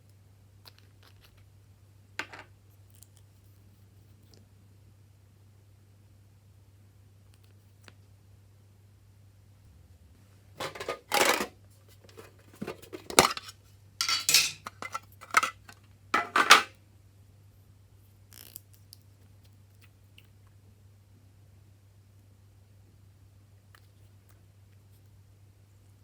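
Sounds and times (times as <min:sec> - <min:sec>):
faint steady hum: 0:00.0 - 0:26.0
small objects clinking: 0:12.1 - 0:16.5.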